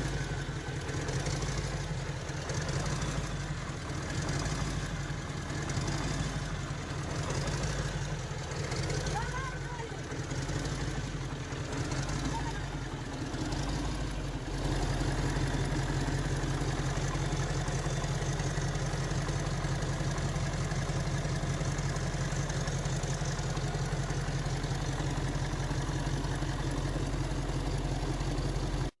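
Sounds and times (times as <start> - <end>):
diesel truck engine idling: 0.0 - 29.0.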